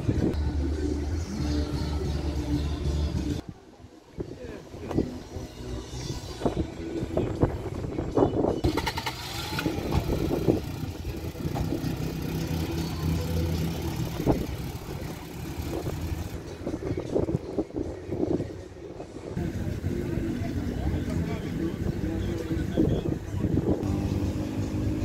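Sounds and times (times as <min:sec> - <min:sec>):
people talking: 0:04.2 - 0:05.2, 0:09.7 - 0:18.6, 0:19.4 - 0:25.0
engine running at low revs: 0:08.6 - 0:16.4, 0:19.4 - 0:25.0.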